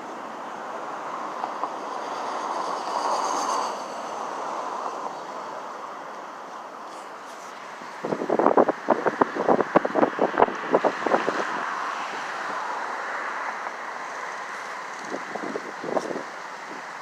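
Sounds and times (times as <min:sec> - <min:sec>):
wind buffeting microphone: 0:07.8 - 0:12.8, 0:14.9 - 0:17.0.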